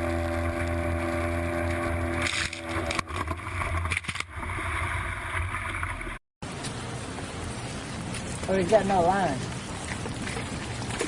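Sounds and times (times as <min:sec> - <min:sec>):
boat motor running: 0:00.0 - 0:04.4.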